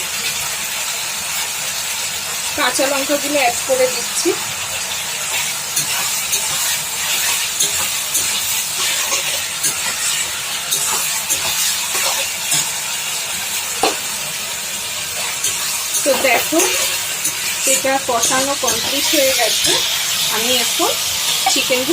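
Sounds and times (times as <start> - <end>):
mixture sizzling in frying pan: 0.0 - 21.9
spatula scraping against pan: 5.2 - 13.0, 15.2 - 21.9.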